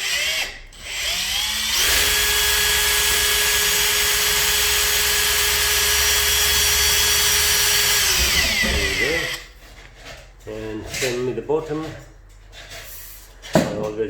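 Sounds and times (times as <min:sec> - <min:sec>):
electric drill cutting sheet metal: 0:00.0 - 0:09.5.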